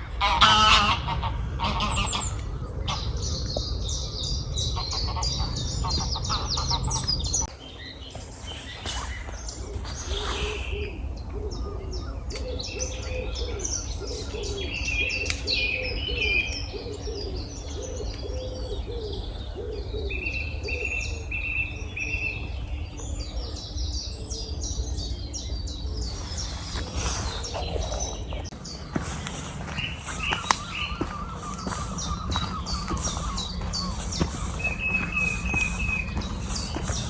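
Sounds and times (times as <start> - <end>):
songbirds chirping and whistling: 0.0 - 37.0
steady low rumble: 0.0 - 37.0
pigeon cooing: 8.8 - 21.4, 25.8 - 28.6, 29.6 - 37.0.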